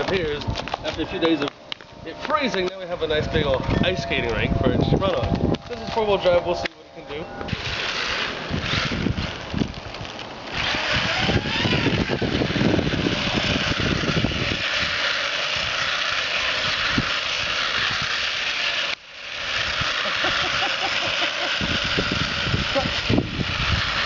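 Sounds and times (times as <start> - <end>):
tyres and chassis rattling: 0.0 - 24.0
rising motor whine: 2.1 - 24.0
remote-control truck motor running: 7.4 - 24.0.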